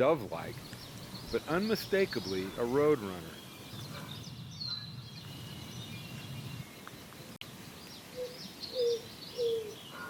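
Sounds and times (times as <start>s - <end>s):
small birds chirping: 0.0s - 10.0s
deep bird coos: 3.7s - 4.9s, 8.1s - 10.0s.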